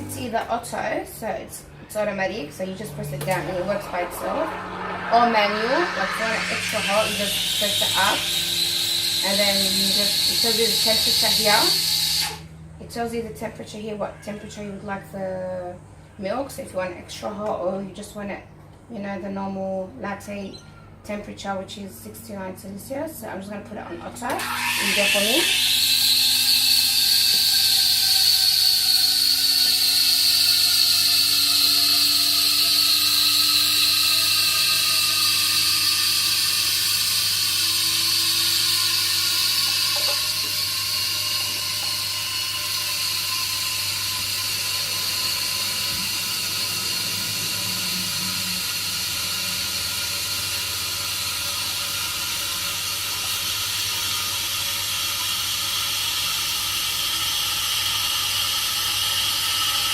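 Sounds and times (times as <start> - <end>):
steam wand frothing milk: 1.9 - 12.4, 24.2 - 59.9.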